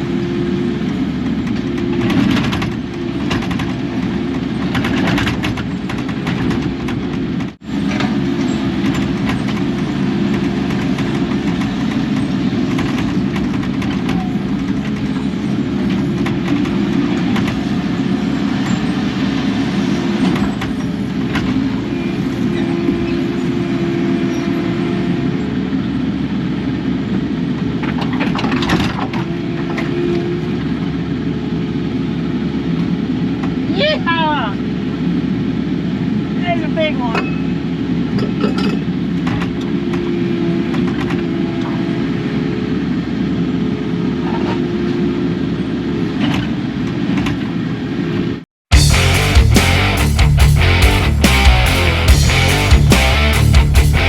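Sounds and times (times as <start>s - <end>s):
excavator diesel engine running: 0.0s - 33.7s, 48.7s - 54.0s.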